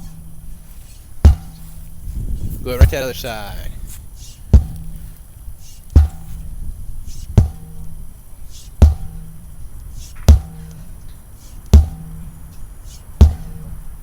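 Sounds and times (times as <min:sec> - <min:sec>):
sledgehammer hitting tire: 0:00.0 - 0:03.1, 0:03.8 - 0:14.0.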